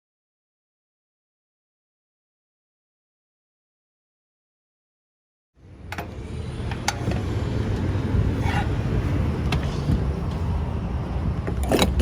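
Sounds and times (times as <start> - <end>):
vehicle road rumble: 5.6 - 12.0.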